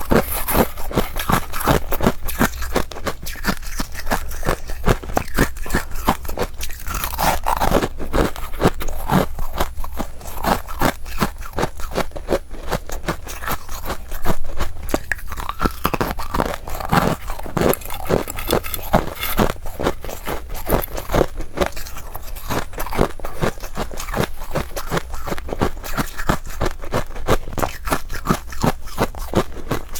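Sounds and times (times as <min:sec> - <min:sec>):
crunching and chewing frost: 0:00.0 - 0:29.9
scraping: 0:16.4 - 0:21.0.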